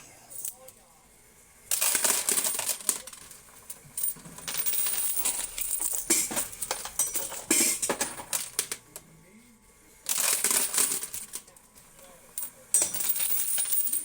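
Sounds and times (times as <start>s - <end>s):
coins clattering into tray: 1.7s - 8.8s, 10.1s - 11.5s, 12.4s - 14.0s.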